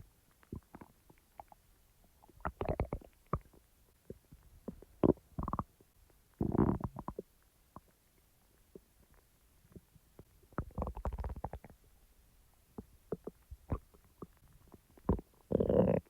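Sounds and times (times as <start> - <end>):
stomach growling and gurgling: 0.4 - 5.8, 6.4 - 7.9, 9.7 - 11.9, 12.7 - 16.0
stomach pops and squelches: 9.7 - 11.8, 12.8 - 16.0.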